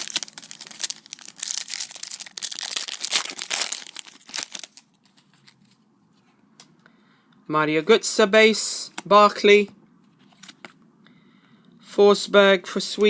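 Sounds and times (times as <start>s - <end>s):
plastic wrapper tearing and crinkling: 0.0s - 5.8s.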